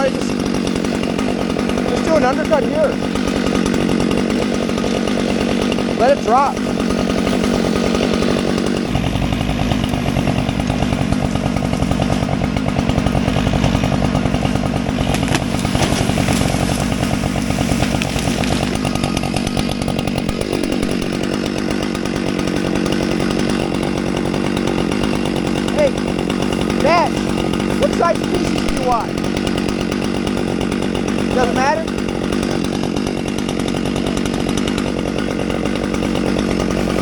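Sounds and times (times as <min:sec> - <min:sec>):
chainsaw running: 0:00.0 - 0:37.0.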